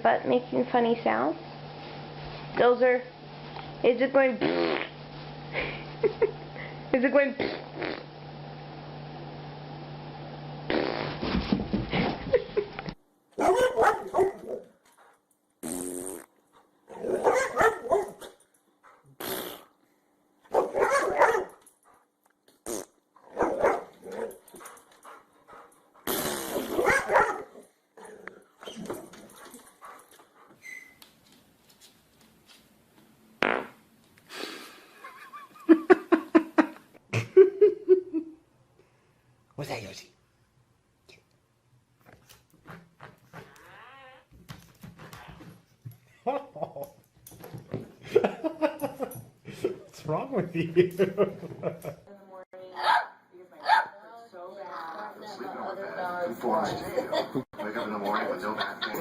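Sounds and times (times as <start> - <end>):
fart sound: 4.4 - 5.0, 7.4 - 8.1, 10.6 - 11.6, 15.6 - 16.3, 19.2 - 19.8, 22.6 - 23.0, 26.1 - 26.9, 33.4 - 33.8, 42.6 - 44.3
dog barking and growling: 13.4 - 15.1, 16.9 - 19.2, 20.5 - 22.0, 23.2 - 30.5, 52.8 - 54.0.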